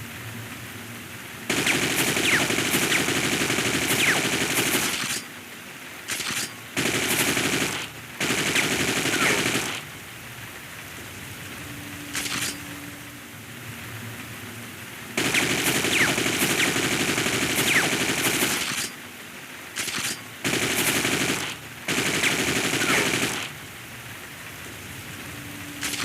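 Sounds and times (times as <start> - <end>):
automatic rifle fire bursts: 1.5 - 5.3, 6.1 - 9.9, 15.2 - 19.0, 19.8 - 23.6.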